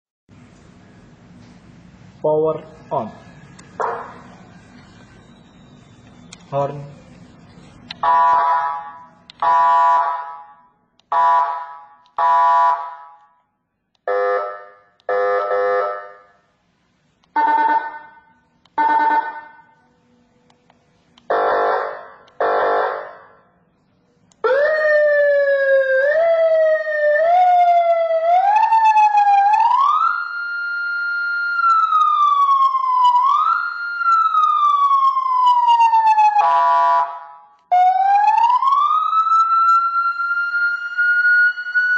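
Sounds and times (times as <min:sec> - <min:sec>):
siren wail: 0:03.1 - 0:06.4, 0:07.9 - 0:13.3, 0:17.3 - 0:18.2, 0:18.8 - 0:19.8, 0:24.4 - 0:41.9
siren horn-tone blasts: 0:03.8 - 0:05.9, 0:08.0 - 0:13.4, 0:14.1 - 0:16.4, 0:17.4 - 0:19.8, 0:21.3 - 0:23.4, 0:36.3 - 0:38.8.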